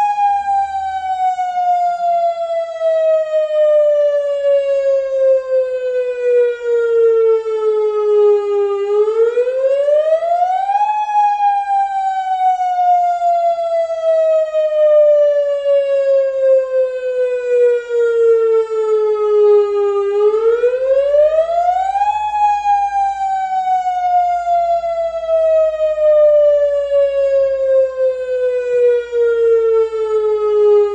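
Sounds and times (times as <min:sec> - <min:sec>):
warning siren wailing: 0:00.0 - 0:30.9.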